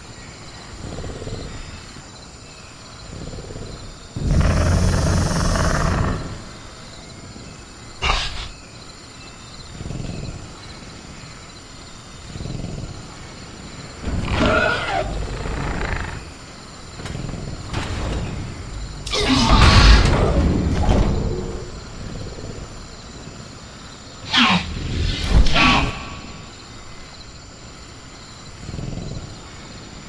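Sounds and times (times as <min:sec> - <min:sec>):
crickets chirring: 0:00.0 - 0:30.0
dinosaur growling and snarling: 0:00.7 - 0:01.9, 0:03.0 - 0:06.9, 0:08.0 - 0:08.6, 0:09.7 - 0:10.6, 0:12.1 - 0:23.4, 0:24.2 - 0:26.8, 0:28.5 - 0:29.8
sharp animal cry: 0:08.0 - 0:08.6, 0:14.0 - 0:16.4, 0:19.0 - 0:20.3, 0:24.2 - 0:26.5.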